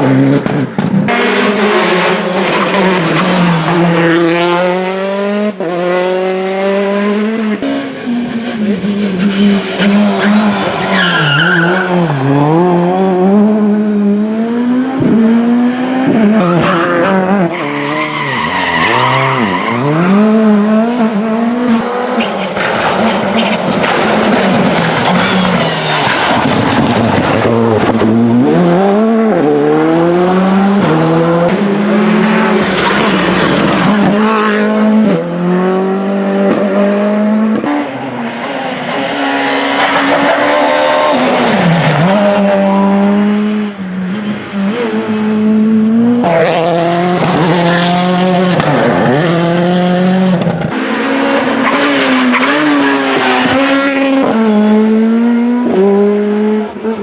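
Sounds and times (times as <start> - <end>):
rally car engines revving: 0.0 - 57.0
tyre squeal and skidding: 2.3 - 4.4, 8.2 - 13.9, 16.4 - 20.3, 22.2 - 28.0, 32.6 - 34.5, 39.8 - 45.5, 51.4 - 54.0.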